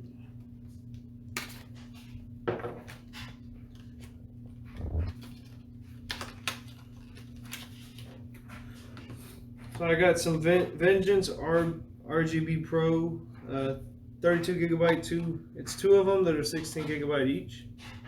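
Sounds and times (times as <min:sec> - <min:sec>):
low electrical hum: 0:00.0 - 0:18.0
packaging rustling: 0:04.8 - 0:08.4.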